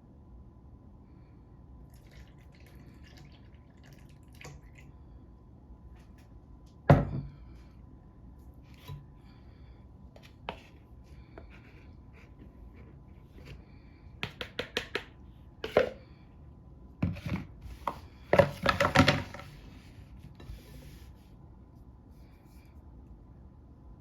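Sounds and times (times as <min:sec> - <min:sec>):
milk pouring into batter: 0:01.8 - 0:05.0.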